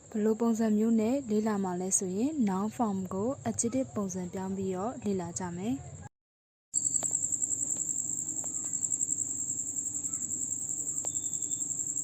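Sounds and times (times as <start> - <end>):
insects trilling: 6.8 - 12.0.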